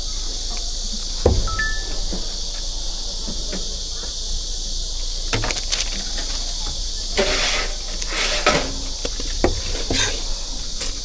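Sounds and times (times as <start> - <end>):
insects chirring: 0.0 - 11.0
clattering knocks and scrapes: 5.3 - 10.3.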